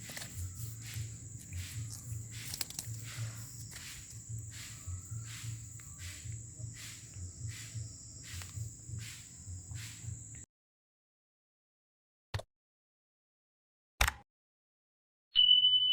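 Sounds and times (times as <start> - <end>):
soft rustle: 0.0 - 10.1
insects chirring: 0.0 - 10.4.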